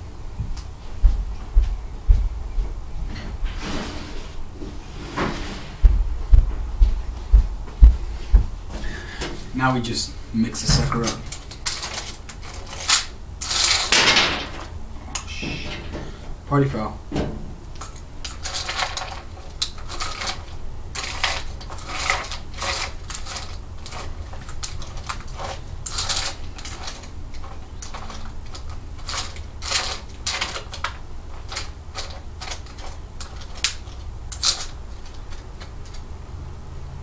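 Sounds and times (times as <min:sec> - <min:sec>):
dog food stirred in a bowl: 0:17.8 - 0:36.1.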